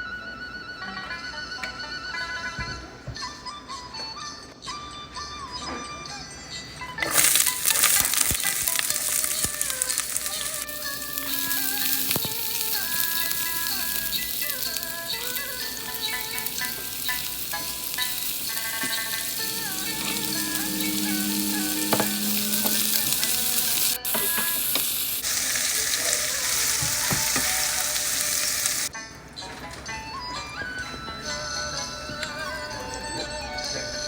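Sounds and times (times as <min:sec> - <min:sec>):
background music: 0:00.0 - 0:34.0
shrimp sizzling in hot oil: 0:07.0 - 0:28.9.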